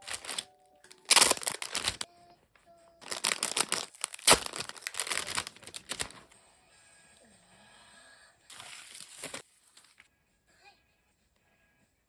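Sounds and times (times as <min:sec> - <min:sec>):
packaging crinkling and tearing: 0:00.0 - 0:02.1, 0:03.0 - 0:06.2, 0:08.5 - 0:09.4.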